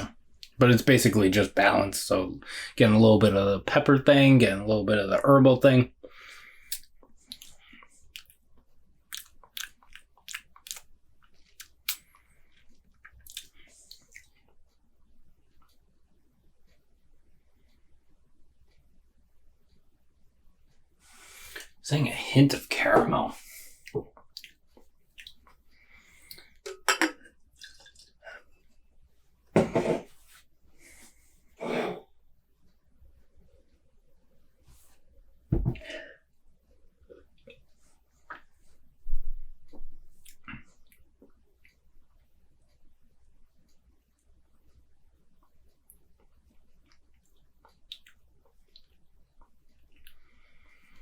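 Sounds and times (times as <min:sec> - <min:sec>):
wet mouth clicks and lip smacks: 0:09.1 - 0:12.1, 0:13.0 - 0:14.3, 0:24.2 - 0:25.6, 0:47.6 - 0:49.0
glasses and cans clinking: 0:26.7 - 0:27.3.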